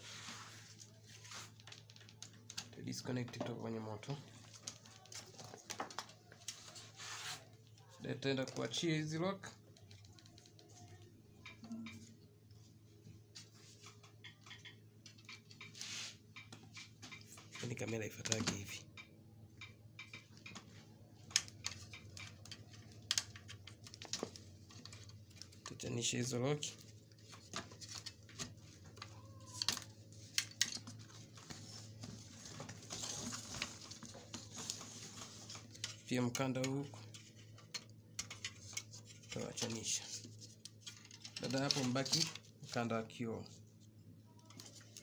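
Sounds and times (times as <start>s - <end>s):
plastic clips clicking and scratching: 14.1s - 15.7s, 16.4s - 31.6s, 32.2s - 42.8s.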